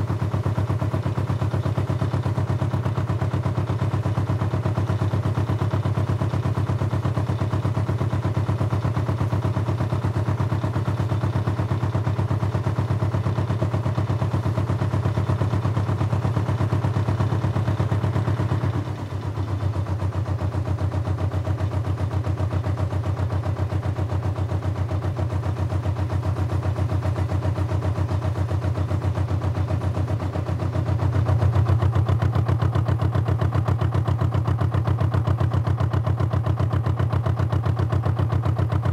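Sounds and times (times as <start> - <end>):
engine running with fast beat: 0.0 - 38.9.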